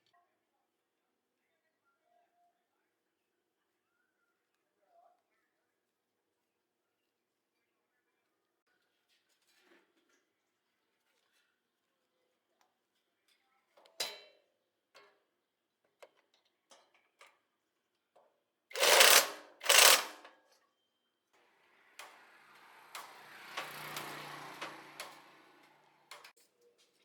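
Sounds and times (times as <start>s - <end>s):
small machine ticking rapidly: 18.7s - 20.2s
loud short noisy bursts: 18.8s - 20.2s.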